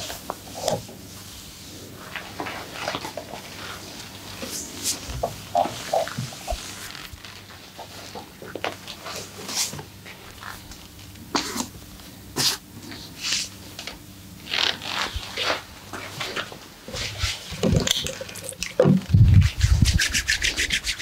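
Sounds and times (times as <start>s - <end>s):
hands slapping and rubbing skin: 17.2s - 21.0s.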